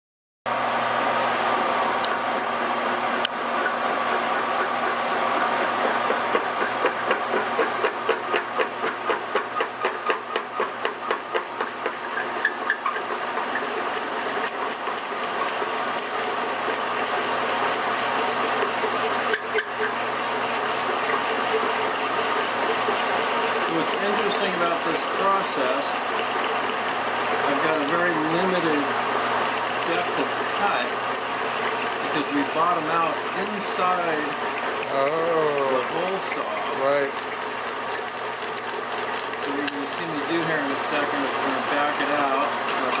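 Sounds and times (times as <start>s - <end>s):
hole saw cutting metal tube: 1.2s - 43.0s.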